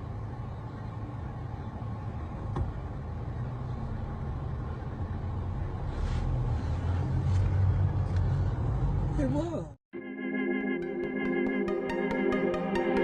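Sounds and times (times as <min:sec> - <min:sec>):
motor vehicle rumble: 0:00.0 - 0:09.8.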